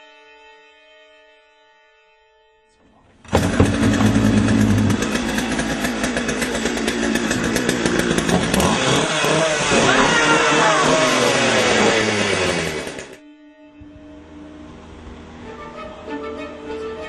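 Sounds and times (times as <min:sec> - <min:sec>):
chainsaw engine running: 0:03.2 - 0:13.2.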